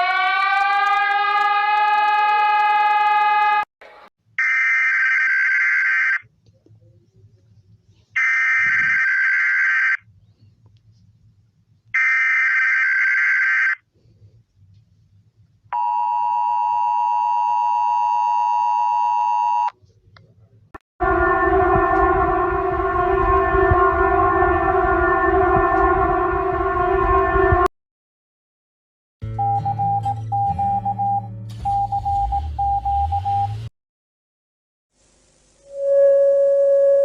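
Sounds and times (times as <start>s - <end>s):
harsh multi-pitch alarm tone: 0.0s - 3.7s, 21.0s - 27.7s
two-tone attention signal: 35.7s - 37.0s.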